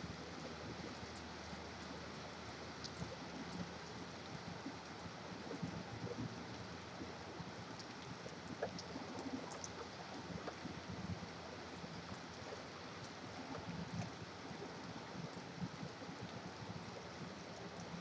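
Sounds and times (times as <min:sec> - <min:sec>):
small drip ticks: 0:06.5 - 0:18.0.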